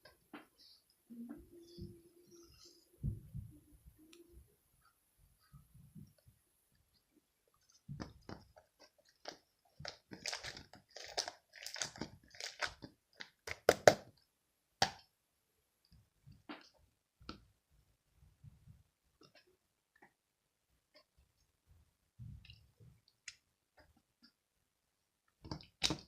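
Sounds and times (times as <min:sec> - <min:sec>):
slime crackling and popping: 0:08.0 - 0:14.2.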